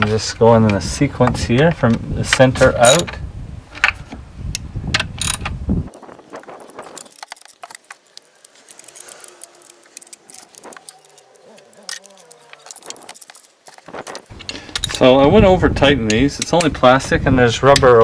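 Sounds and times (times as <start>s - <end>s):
tools clinking on metal: 2.8s - 3.1s, 8.7s - 13.6s.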